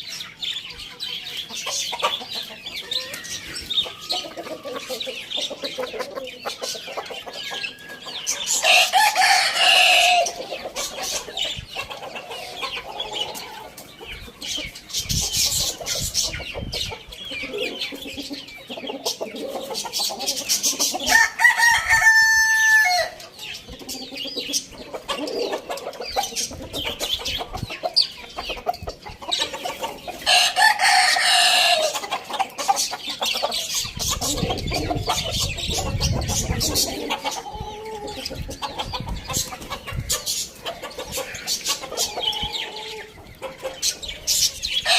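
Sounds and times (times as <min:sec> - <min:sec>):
chickens clucking: 0:00.0 - 0:44.9
rooster crowing: 0:08.6 - 0:10.4, 0:21.1 - 0:23.2, 0:30.3 - 0:31.9.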